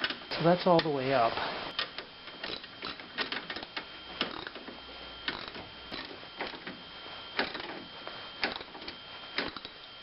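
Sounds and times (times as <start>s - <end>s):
ratchet wrench clicking: 5.3s - 6.6s, 8.4s - 8.8s, 9.4s - 9.8s.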